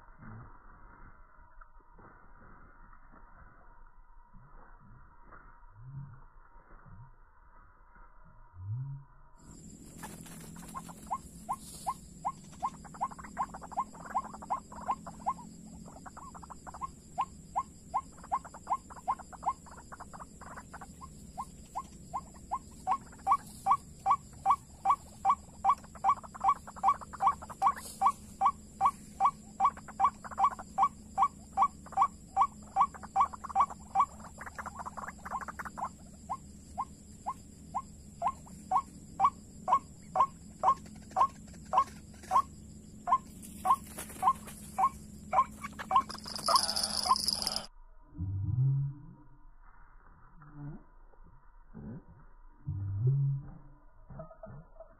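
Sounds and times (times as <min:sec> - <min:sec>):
waterhen calling: 0:10.0 - 0:47.7.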